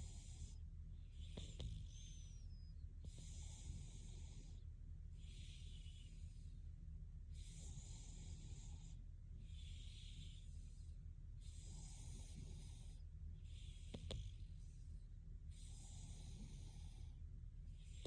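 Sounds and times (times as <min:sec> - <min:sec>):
low steady hum: 0:00.0 - 0:18.0
person breathing softly: 0:00.0 - 0:18.0.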